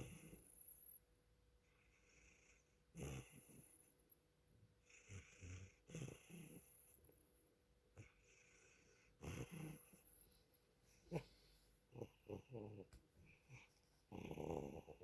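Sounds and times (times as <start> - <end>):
cat snoring: 0.0 - 1.0, 1.8 - 3.9, 4.8 - 7.0, 8.0 - 10.3, 13.5 - 15.0.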